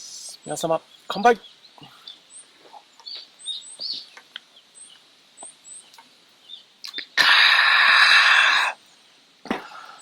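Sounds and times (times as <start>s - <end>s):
small birds chirping: 0.0s - 10.0s
loud breathy rush of noise: 9.5s - 10.0s.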